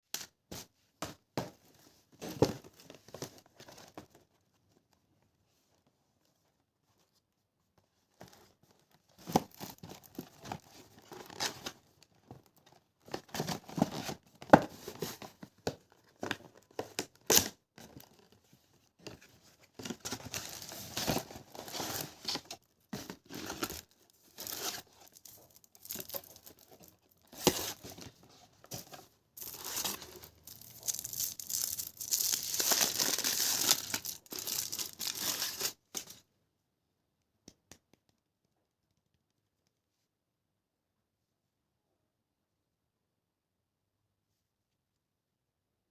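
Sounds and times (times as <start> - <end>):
wrappers tearing and crinkling: 23.2 - 27.7, 29.4 - 35.8.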